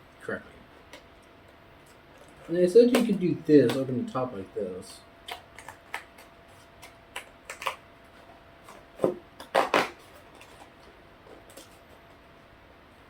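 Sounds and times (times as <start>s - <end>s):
snack packaging crinkling: 5.2s - 12.0s.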